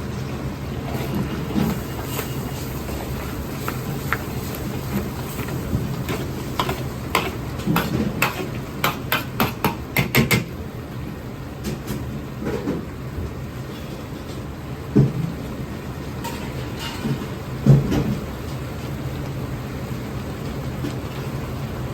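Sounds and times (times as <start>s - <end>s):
low kitchen hum: 0.0s - 21.9s
utensils striking cookware: 6.1s - 10.5s.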